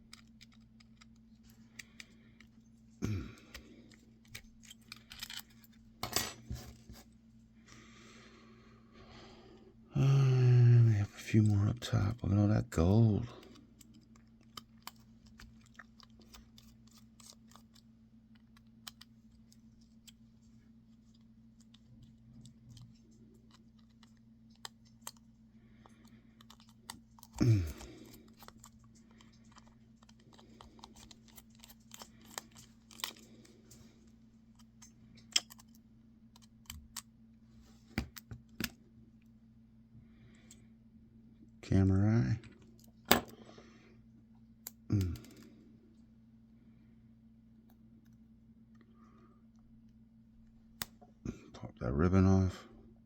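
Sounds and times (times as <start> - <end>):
faint low hum: 0.0 - 53.0
small tools clicking and tapping: 34.6 - 35.8.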